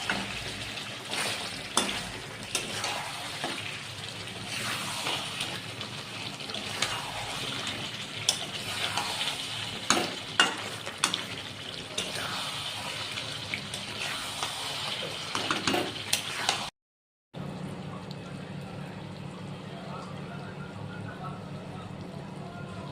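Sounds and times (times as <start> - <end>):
food sizzling in a pan: 0.0 - 16.7.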